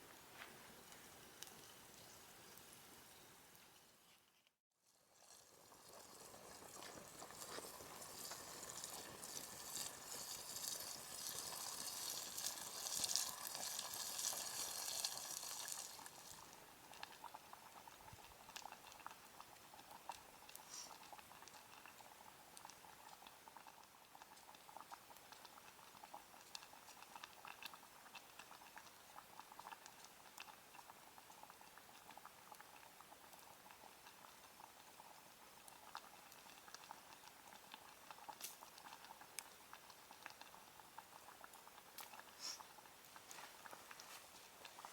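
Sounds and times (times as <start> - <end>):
food sizzling in a mess tin: 4.8 - 16.7, 18.8 - 23.2, 36.2 - 41.2, 41.9 - 44.9.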